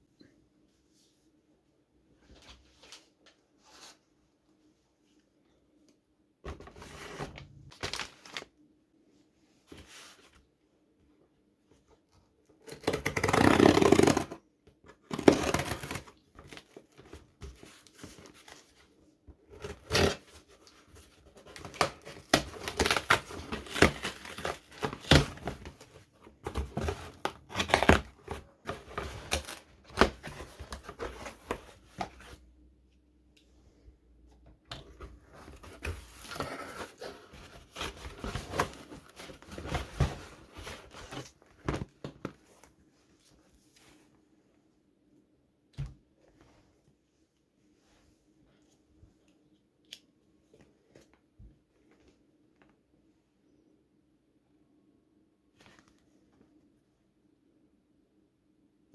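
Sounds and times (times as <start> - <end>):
packaging cutting and tearing: 12.7 - 14.4.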